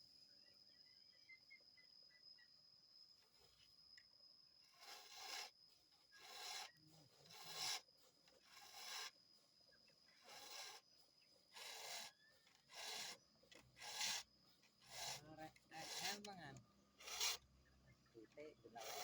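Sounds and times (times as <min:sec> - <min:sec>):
file rasping on saw chain: 0:04.7 - 0:09.3, 0:10.0 - 0:17.5, 0:18.7 - 0:19.0.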